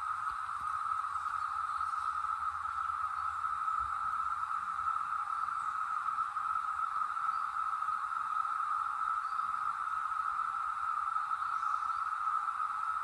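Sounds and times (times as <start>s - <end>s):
cicadas droning: 0.0s - 13.0s.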